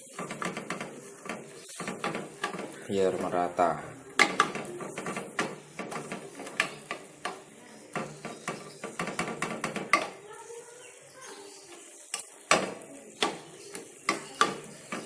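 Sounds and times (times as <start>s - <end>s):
stirrer knocking on container: 4.2s - 10.2s.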